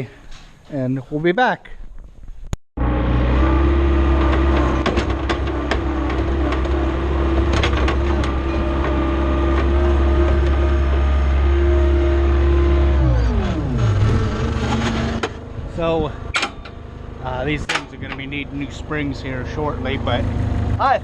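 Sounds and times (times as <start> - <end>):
skid steer diesel engine running: 2.8 - 21.0
clicks and knocks: 4.1 - 11.2.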